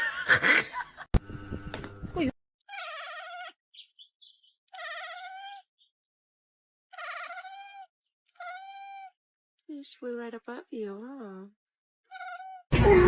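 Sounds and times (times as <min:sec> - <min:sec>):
cat meowing: 0:02.7 - 0:03.6, 0:04.7 - 0:05.7, 0:06.9 - 0:09.2, 0:12.1 - 0:12.6.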